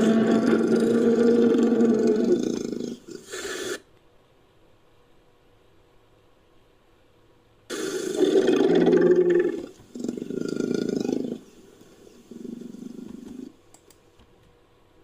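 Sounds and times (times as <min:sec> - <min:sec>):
elephant rumbling: 0:00.0 - 0:03.0.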